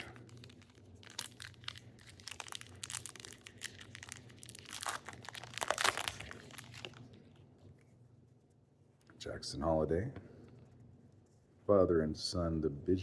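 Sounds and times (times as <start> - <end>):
card pack wrapper tearing: 0.0 - 7.0.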